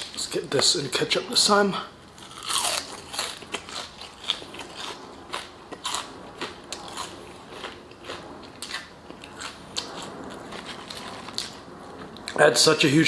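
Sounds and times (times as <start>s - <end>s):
chewing crispy food: 2.2s - 12.4s.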